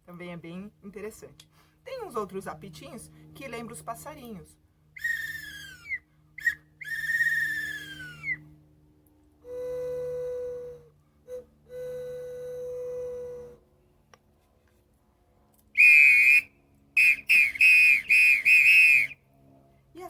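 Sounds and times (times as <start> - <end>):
high warbling toy whistle: 5.0 - 8.4, 9.5 - 13.6, 15.8 - 19.2
low toy whistle tones: 5.0 - 8.4, 9.4 - 13.6, 15.8 - 19.2.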